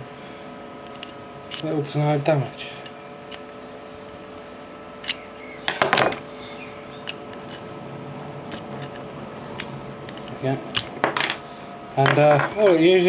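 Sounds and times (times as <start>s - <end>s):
small plastic parts clicking: 0.8s - 1.8s, 7.0s - 7.6s, 8.2s - 11.4s
clicking and scraping: 0.8s - 1.9s, 2.6s - 6.2s, 7.0s - 11.1s.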